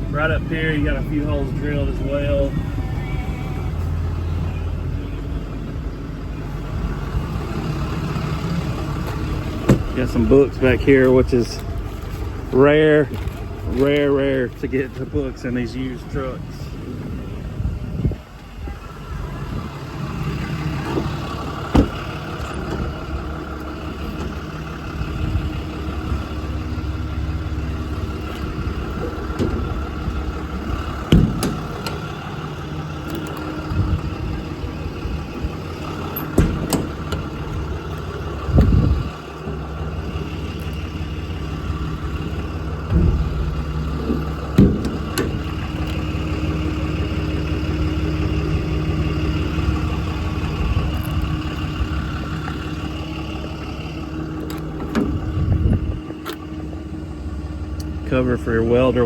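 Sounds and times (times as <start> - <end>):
diesel engine idling: 0.0 - 59.0
sharp knocks and thumps: 21.7 - 22.0, 31.1 - 32.0, 42.8 - 45.5.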